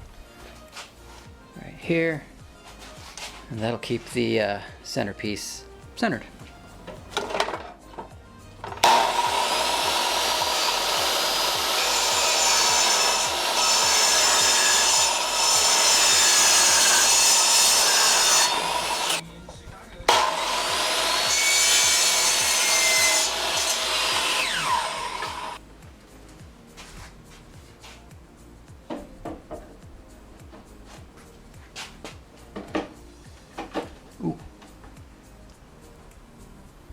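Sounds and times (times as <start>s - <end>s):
power saw cutting wood: 8.8s - 19.2s, 20.1s - 25.6s.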